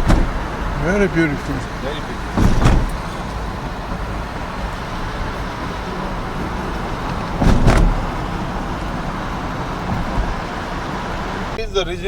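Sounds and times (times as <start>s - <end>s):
thump: 0.0s - 0.7s, 2.3s - 4.1s, 4.7s - 11.6s
car driving road noise: 0.0s - 12.0s.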